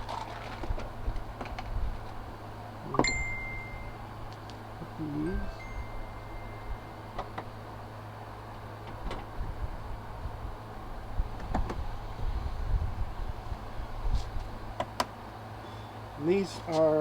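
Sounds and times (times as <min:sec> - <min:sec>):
low hum: 0:02.8 - 0:08.7
high steady tone: 0:02.9 - 0:08.0.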